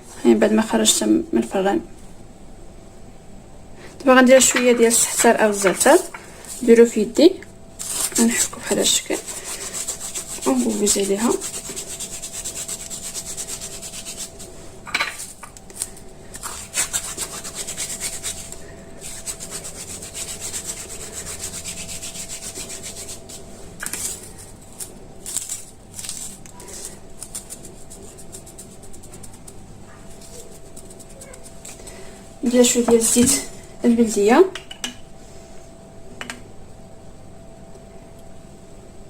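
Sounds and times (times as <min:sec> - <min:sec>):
dried herbs rubbed between palms: 0:05.0 - 0:06.9, 0:07.8 - 0:33.4.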